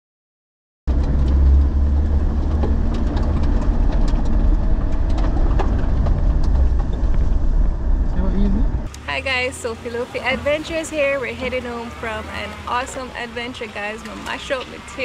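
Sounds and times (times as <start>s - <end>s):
small rattles and clicks: 0.9s - 7.4s
vehicle engine rumble: 0.9s - 15.0s.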